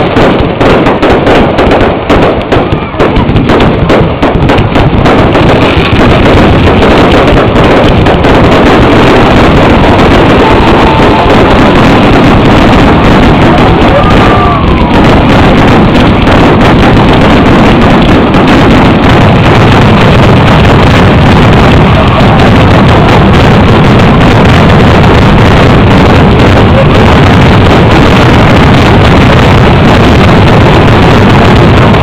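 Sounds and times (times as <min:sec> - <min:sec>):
fireworks explosions: 0:00.0 - 0:32.0
firework whistles: 0:05.1 - 0:29.4.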